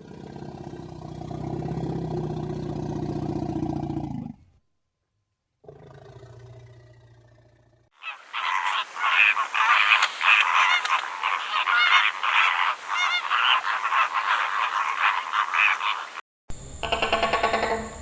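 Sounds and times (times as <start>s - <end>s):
waterfowl flock calling: 8.0s - 16.2s.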